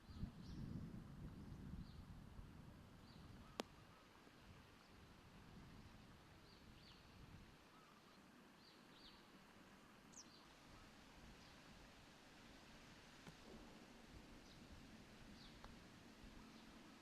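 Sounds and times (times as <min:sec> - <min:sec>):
faint background hiss: 0:00.0 - 0:17.0.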